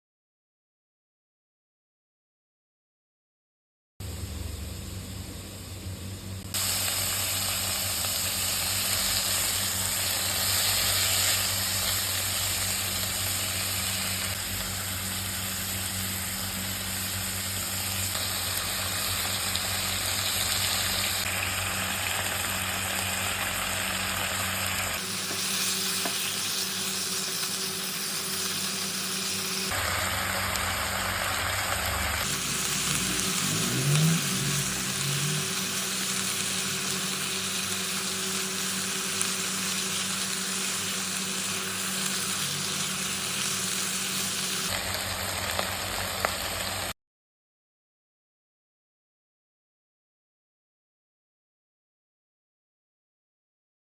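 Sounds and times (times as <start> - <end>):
food sizzling in a pan: 4.1 - 47.0.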